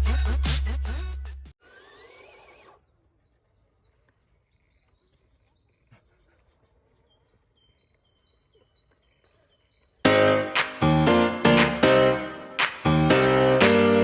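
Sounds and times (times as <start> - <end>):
faint high bird chirps: 1.8 - 10.1.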